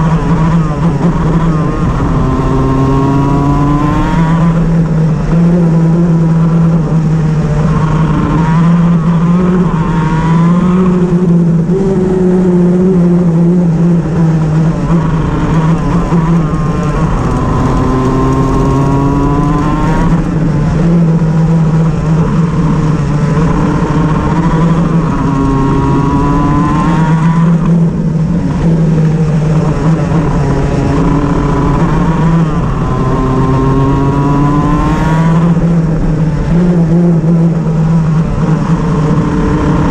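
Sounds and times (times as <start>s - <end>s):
two-stroke kart engine accelerating: 0.0s - 39.9s.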